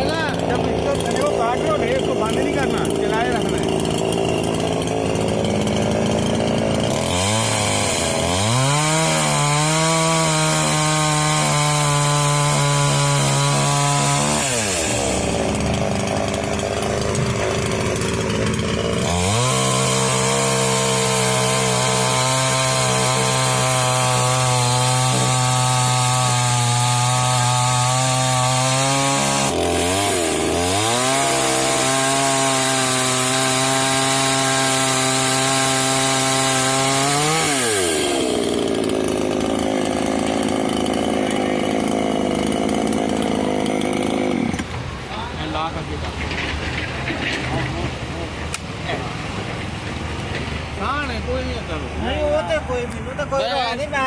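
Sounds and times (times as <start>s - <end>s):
chainsaw revving and idling: 0.0s - 54.0s.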